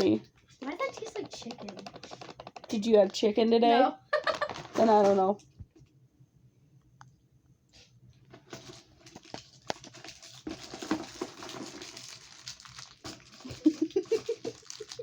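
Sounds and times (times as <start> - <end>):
plastic wrappers crinkling: 0.0 - 3.4, 8.4 - 15.0.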